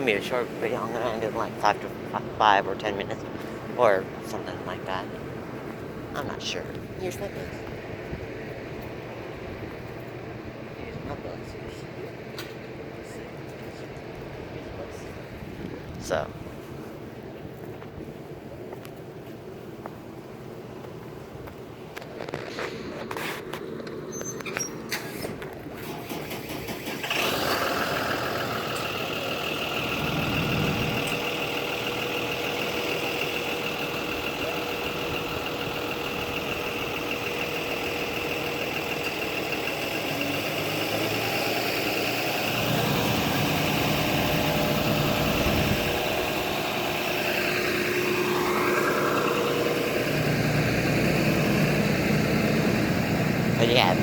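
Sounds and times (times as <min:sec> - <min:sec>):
bus engine running: 0:00.0 - 0:54.0
steady whine: 0:28.4 - 0:54.0.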